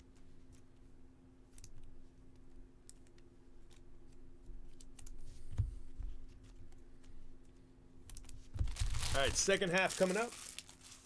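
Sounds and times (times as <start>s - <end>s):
trading cards clicking and rustling: 8.1s - 10.8s.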